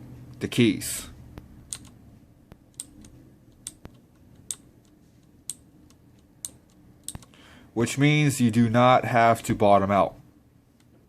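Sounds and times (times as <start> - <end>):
mechanical keyboard key clicks: 1.7 - 2.0.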